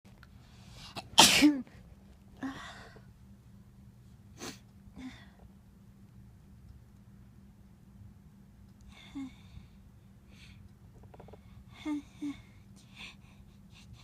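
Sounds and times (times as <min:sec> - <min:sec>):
person sneezing: 0:01.0 - 0:01.6
soft breaths: 0:08.7 - 0:14.0.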